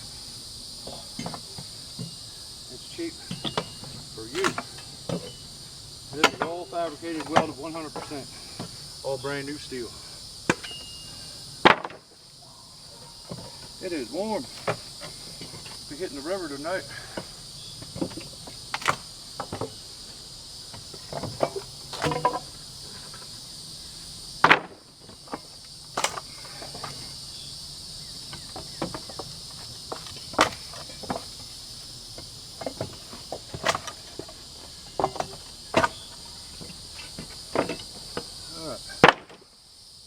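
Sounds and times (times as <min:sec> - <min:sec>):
insects chirring: 0:00.0 - 0:40.0
boards pried off pallet cracking: 0:03.2 - 0:08.8, 0:10.4 - 0:11.0, 0:11.6 - 0:12.2, 0:13.3 - 0:16.1, 0:16.9 - 0:23.4, 0:24.4 - 0:27.2, 0:28.2 - 0:38.3, 0:38.9 - 0:39.5.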